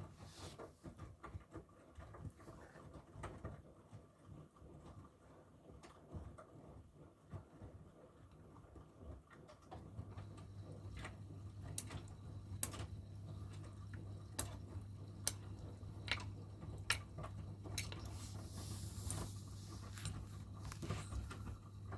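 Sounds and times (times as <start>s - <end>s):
washing machine humming: 9.2s - 21.9s.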